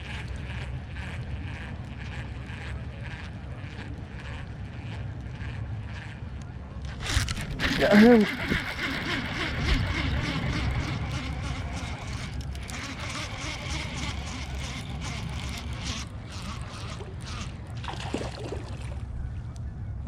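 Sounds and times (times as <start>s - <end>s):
fishing reel winding: 0.0s - 6.2s, 6.8s - 17.8s
wind and water rumble: 0.0s - 20.0s
water splashing: 6.9s - 19.1s.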